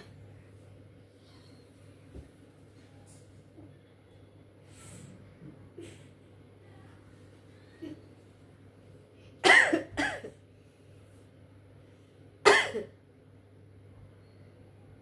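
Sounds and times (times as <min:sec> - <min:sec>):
woman coughing: 0:09.4 - 0:10.4, 0:12.4 - 0:13.0.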